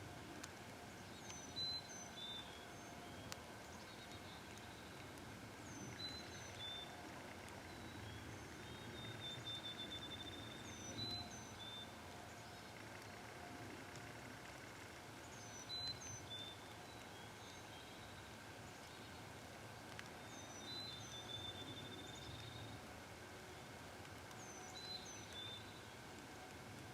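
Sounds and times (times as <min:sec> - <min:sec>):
low steady hiss: 0:00.0 - 0:26.9
songbirds singing: 0:00.0 - 0:26.9
bird trill: 0:07.6 - 0:12.8.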